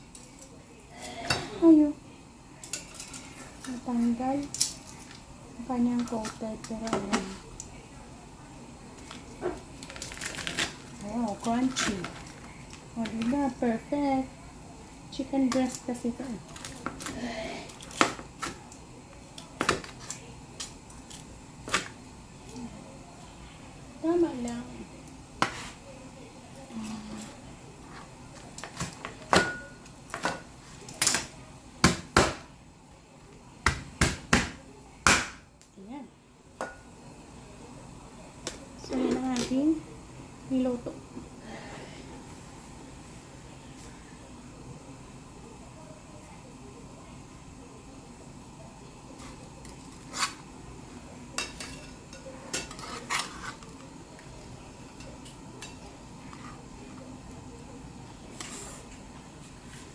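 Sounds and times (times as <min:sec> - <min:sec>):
utensils clinking on plate: 0:28.6 - 0:31.2, 0:51.3 - 0:53.9
utensils scraping plate: 0:49.2 - 0:50.5, 0:51.4 - 0:53.9, 0:58.3 - 0:59.0.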